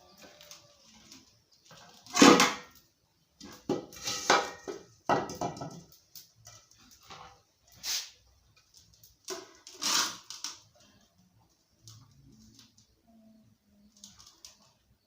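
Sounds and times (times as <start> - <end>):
metal pots and utensils clanking: 1.2 - 2.7, 3.4 - 7.4.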